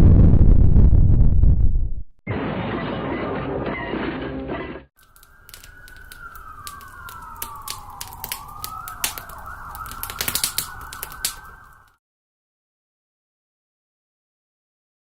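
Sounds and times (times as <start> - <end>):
sharp crackles and clicks: 5.0 - 12.0
siren-like whistling tone: 5.0 - 12.0.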